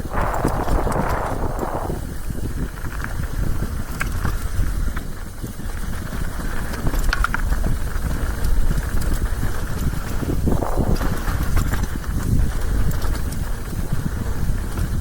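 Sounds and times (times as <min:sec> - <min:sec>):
mountain bike rattling downhill: 0:00.0 - 0:15.0
wind buffeting microphone: 0:00.0 - 0:15.0.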